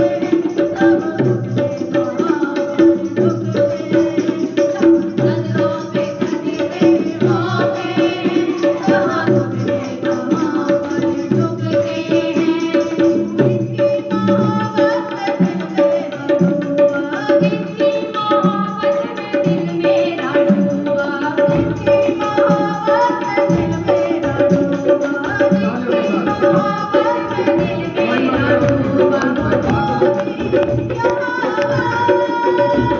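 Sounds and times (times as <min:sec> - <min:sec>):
busy drum rhythm: 0:00.0 - 0:32.9
worship song music: 0:17.8 - 0:32.9.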